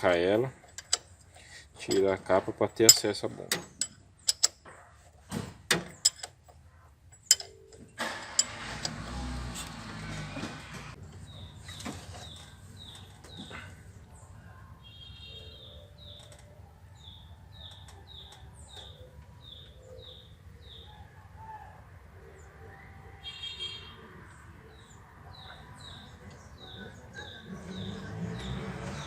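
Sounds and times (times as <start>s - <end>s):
bird chirping: 11.0s - 29.0s.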